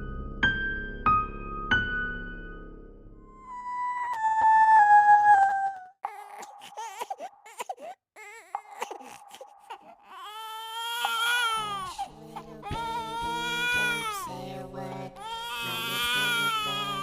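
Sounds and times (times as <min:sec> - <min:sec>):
person sobbing and wailing: 0:03.4 - 0:14.5, 0:15.2 - 0:17.0.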